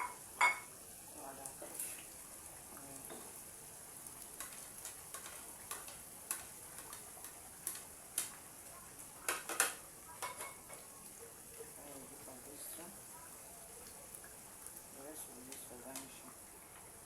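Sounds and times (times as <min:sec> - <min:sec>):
spoon knocking against pot: 0:00.0 - 0:00.7, 0:09.3 - 0:10.8
sauce sizzling: 0:00.0 - 0:17.0.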